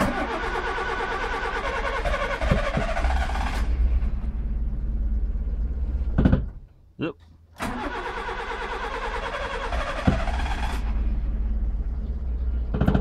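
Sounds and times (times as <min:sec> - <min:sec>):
engine idling: 0:00.0 - 0:13.0
starter motor cranking: 0:07.6 - 0:11.0.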